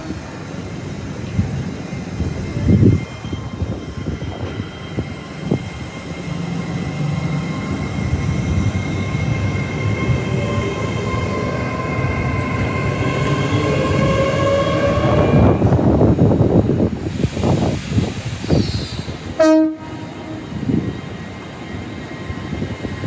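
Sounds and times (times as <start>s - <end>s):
train approaching: 0.0s - 23.0s.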